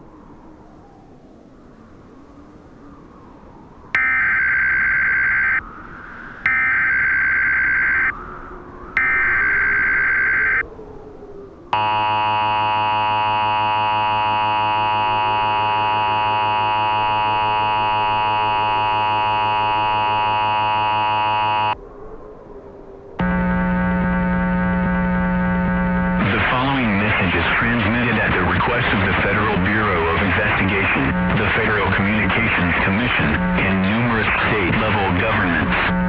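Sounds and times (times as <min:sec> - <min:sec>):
two-tone alert signal: 0:04.0 - 0:05.6, 0:06.5 - 0:08.1, 0:09.0 - 0:10.6, 0:11.8 - 0:21.8.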